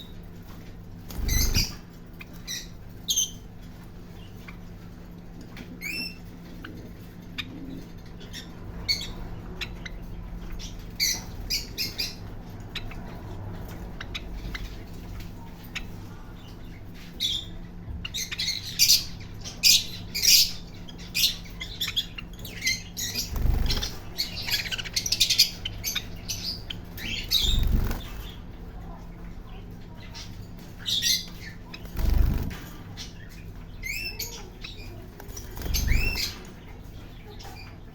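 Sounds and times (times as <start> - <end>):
parrot squawking and chirping: 1.2 - 3.4, 30.8 - 36.5.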